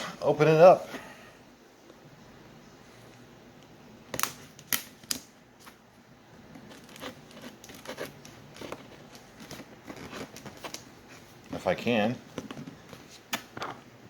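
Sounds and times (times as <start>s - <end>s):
packaging scratching and rustling: 6.6s - 11.7s.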